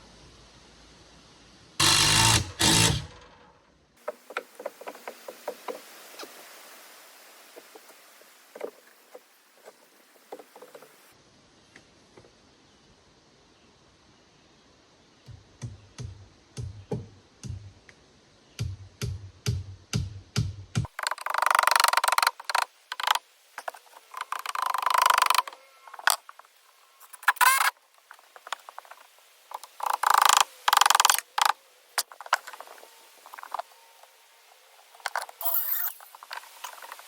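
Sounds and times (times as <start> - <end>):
harsh noisy bursts: 1.8 - 3.4.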